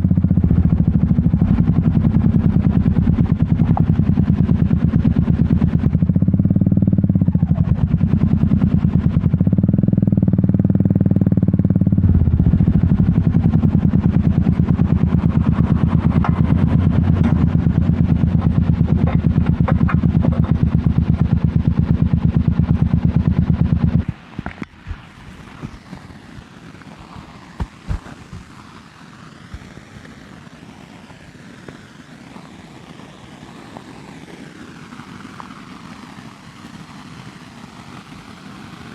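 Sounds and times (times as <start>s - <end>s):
motorcycle engine idling: 0.0s - 26.0s.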